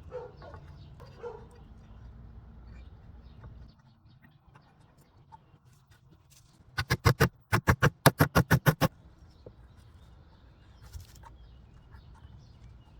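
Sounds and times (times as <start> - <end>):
rapid sharp knocks: 6.8 - 8.9.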